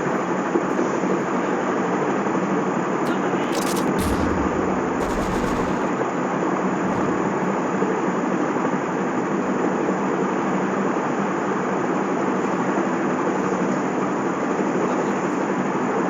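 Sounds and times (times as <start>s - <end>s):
loud rumbling noise: 3.5s - 7.8s.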